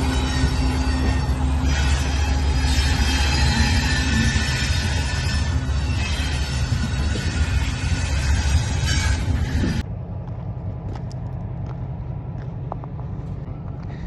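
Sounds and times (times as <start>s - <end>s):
train loud full sound: 0.0s - 10.0s
steady low rumble: 5.5s - 14.0s.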